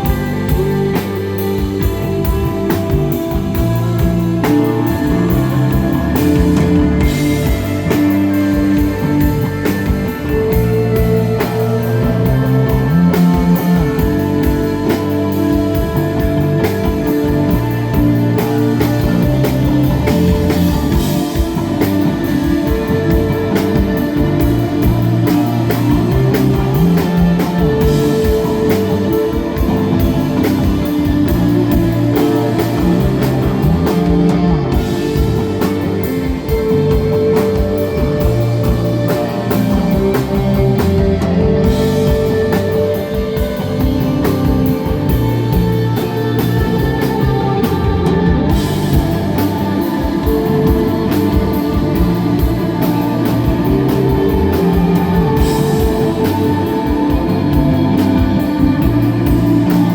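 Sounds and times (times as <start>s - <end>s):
bass line: 0.0s - 59.9s
drum kit steady beat: 0.0s - 59.9s
electric guitar notes ringing: 0.0s - 59.9s.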